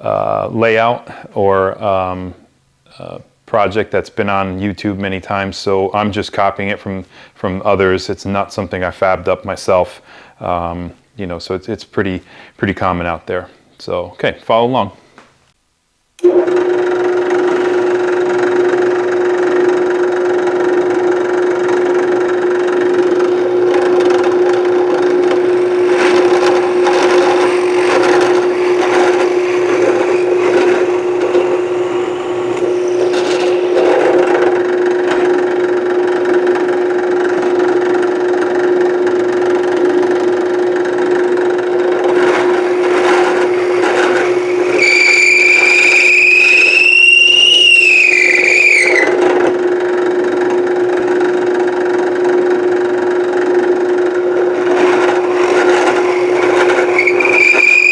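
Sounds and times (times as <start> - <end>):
drill press boring wood: 16.2 - 57.9
high rising whine: 22.3 - 37.6, 41.8 - 49.1, 54.2 - 57.9.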